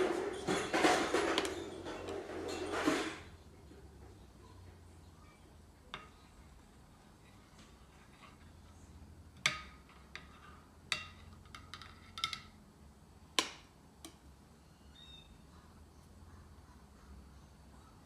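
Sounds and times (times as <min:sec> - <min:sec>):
kitchen utensils clinking: 0:00.0 - 0:03.4.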